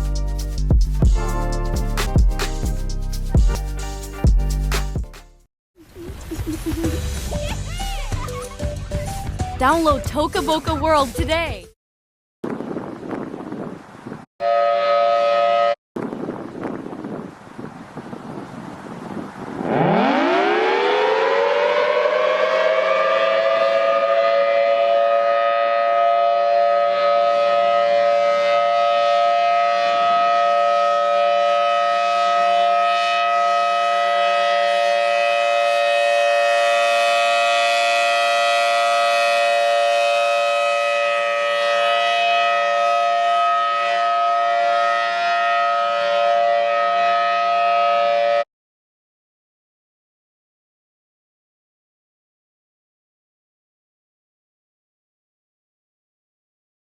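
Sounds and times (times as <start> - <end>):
warning siren winding up: 19.6 - 24.8.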